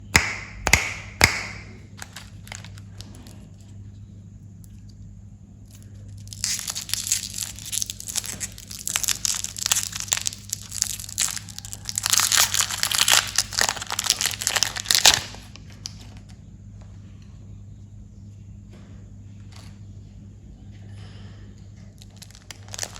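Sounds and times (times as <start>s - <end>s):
candy wrappers crinkling: 0.7s - 3.7s, 5.7s - 16.3s, 22.0s - 22.9s.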